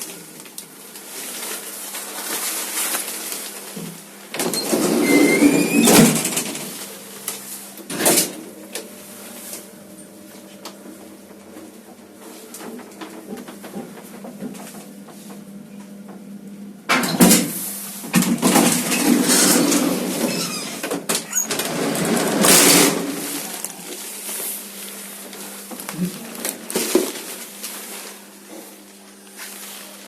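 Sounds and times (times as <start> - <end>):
lift doors clattering and banging: 4.4 - 6.6, 18.1 - 23.3.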